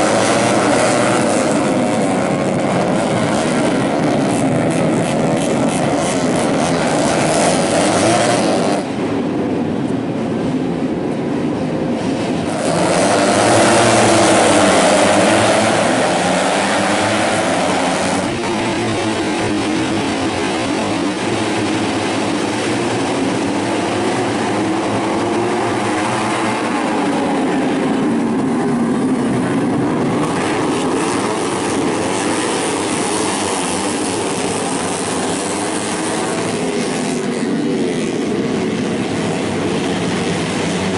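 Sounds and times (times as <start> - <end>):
race motorcycles revving high: 0.0 - 40.9.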